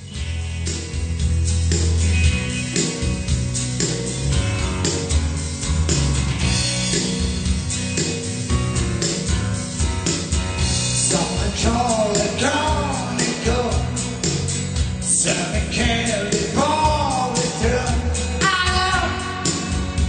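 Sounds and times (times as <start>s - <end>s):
rock band playing: 0.0s - 20.0s
man singing: 10.9s - 20.0s.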